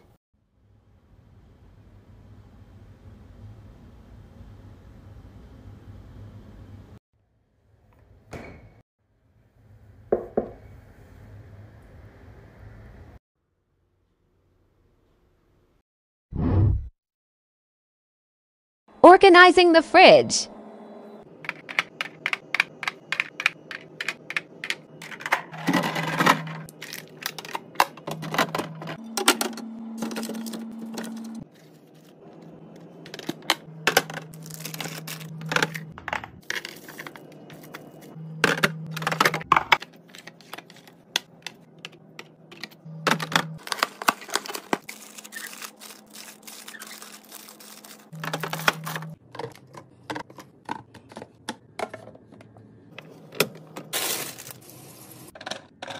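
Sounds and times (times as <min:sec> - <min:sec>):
plastic containers clattering: 0:21.4 - 0:31.3, 0:33.0 - 0:54.6.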